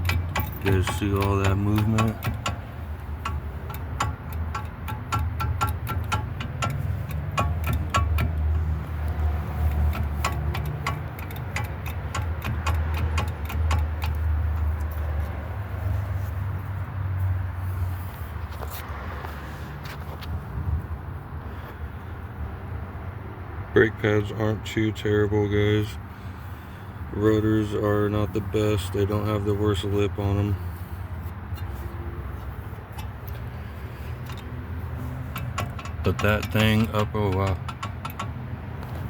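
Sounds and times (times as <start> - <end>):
metallic clicking and knocking: 0.0 - 15.4, 31.4 - 39.0.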